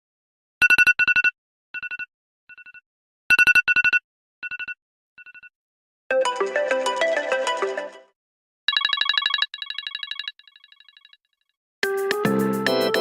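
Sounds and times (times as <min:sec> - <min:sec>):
melodic ringtone: 0:06.1 - 0:08.1, 0:08.7 - 0:11.2, 0:12.2 - 0:13.0.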